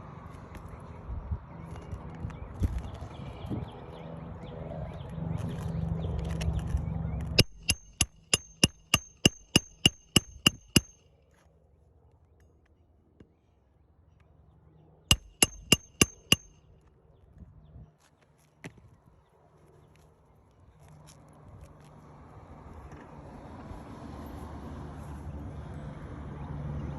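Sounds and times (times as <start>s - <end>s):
hammer striking roofing nails: 7.4s - 11.0s, 15.1s - 16.5s.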